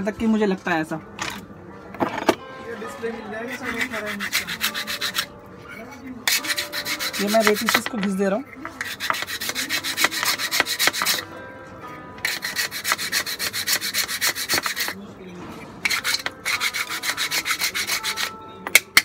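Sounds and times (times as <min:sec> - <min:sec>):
hand file scraping steel: 0:03.4 - 0:07.9, 0:08.5 - 0:11.3, 0:12.2 - 0:15.0, 0:15.8 - 0:18.4.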